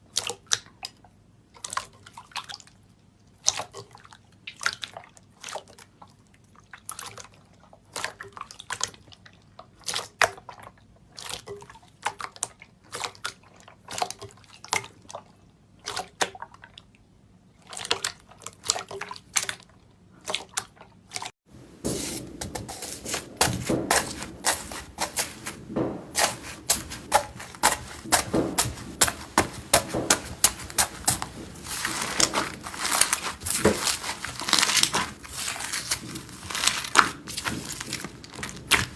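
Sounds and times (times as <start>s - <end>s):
slime crackling and crunching: 21.9s - 38.9s.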